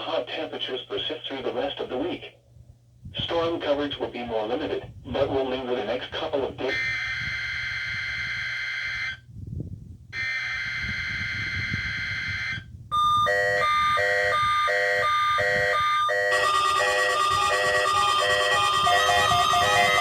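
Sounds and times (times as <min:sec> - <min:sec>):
alternating electronic beeping: 0:12.4 - 0:20.0.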